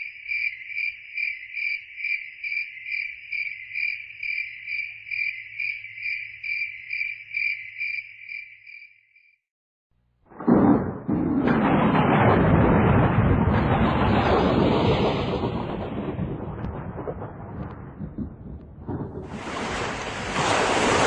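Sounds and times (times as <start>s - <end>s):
cricket chirping: 0.0s - 9.4s.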